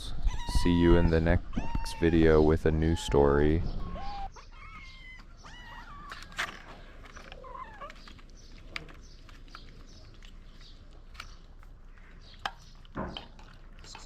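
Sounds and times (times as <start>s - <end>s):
kitten meowing: 0.3s - 3.2s.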